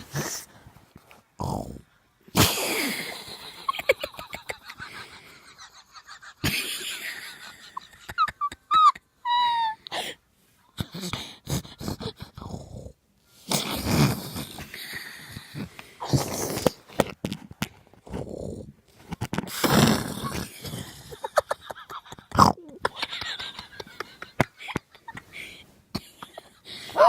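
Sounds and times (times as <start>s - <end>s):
dog wheezing and snorting: 26.4s - 27.0s.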